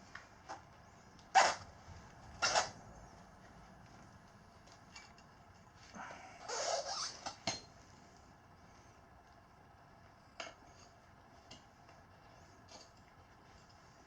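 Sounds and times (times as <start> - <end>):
tire irons scraping a rim: 1.3 - 3.2, 6.4 - 7.4.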